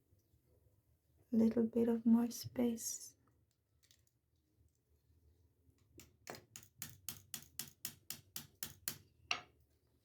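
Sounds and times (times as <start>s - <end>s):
hammer tapping metal fastener: 6.3s - 9.1s.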